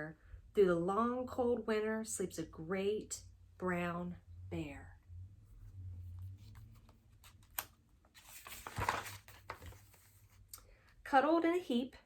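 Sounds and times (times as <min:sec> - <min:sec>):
paper page rustle: 0:06.3 - 0:10.4.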